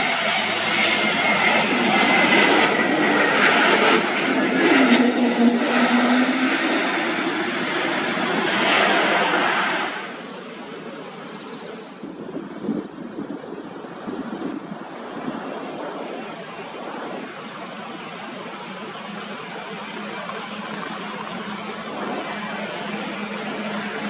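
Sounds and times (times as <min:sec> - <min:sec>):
jet airliner passing: 0:00.0 - 0:24.0.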